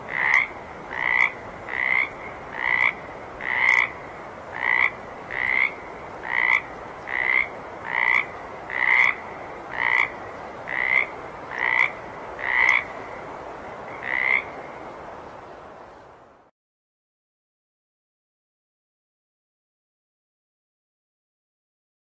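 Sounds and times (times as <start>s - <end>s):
faint background hiss: 0.0s - 16.5s
frog croaking: 0.1s - 13.2s, 13.9s - 14.6s.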